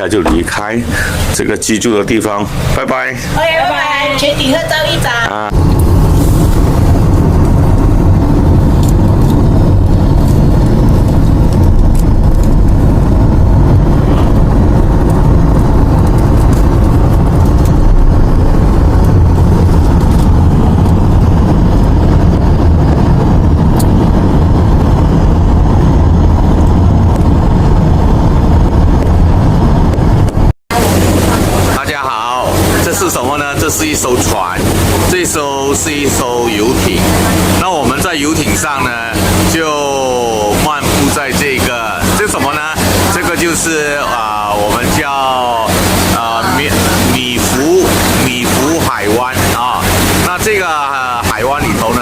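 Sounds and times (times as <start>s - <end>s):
car engine and tyre rumble: 0.0s - 52.0s.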